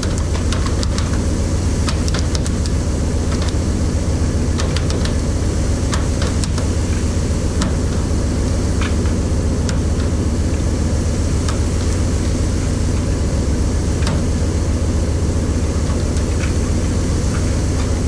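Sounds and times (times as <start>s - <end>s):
sharp clicks and knocks: 0.0s - 1.2s, 1.8s - 3.6s, 4.5s - 10.2s, 13.9s - 14.4s
boat engine rumbling: 0.0s - 18.0s
water rushing: 0.0s - 18.0s.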